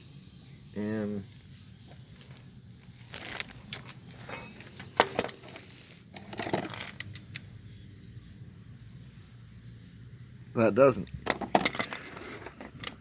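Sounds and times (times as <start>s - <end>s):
metal parts clinking: 3.0s - 7.6s, 11.1s - 13.0s.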